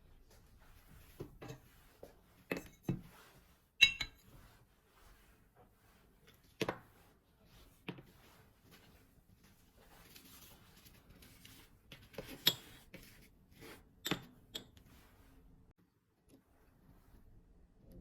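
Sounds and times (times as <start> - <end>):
dishes and utensils clinking: 3.8 - 4.3.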